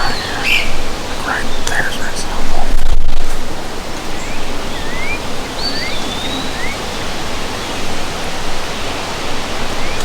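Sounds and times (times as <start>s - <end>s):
bird chirping: 0.0s - 2.7s, 4.0s - 8.0s.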